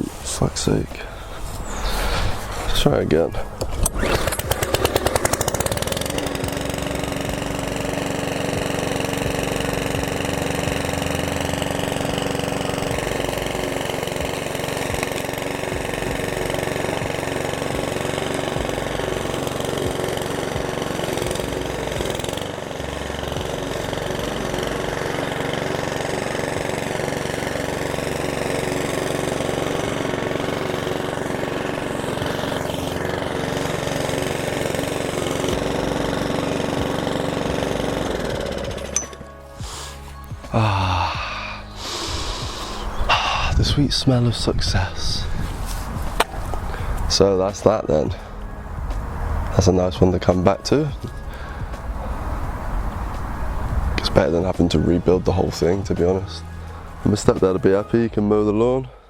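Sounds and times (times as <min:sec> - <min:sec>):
lawn mower engine running: 0:00.0 - 0:59.0.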